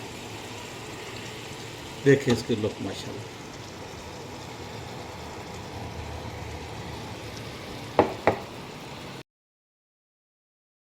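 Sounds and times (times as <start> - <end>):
steady hiss: 0.0 - 9.2
sharp knocks: 8.0 - 8.5.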